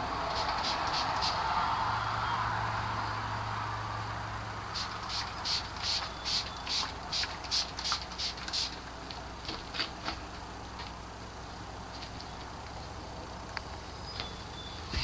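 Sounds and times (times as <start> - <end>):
rhythmic scraping strokes: 0.0 - 1.4
steady hiss: 0.0 - 1.7, 4.6 - 14.0.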